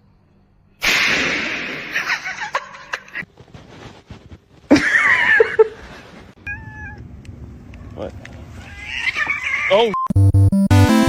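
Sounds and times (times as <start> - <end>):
people laughing: 1.9 - 3.2, 4.7 - 6.0.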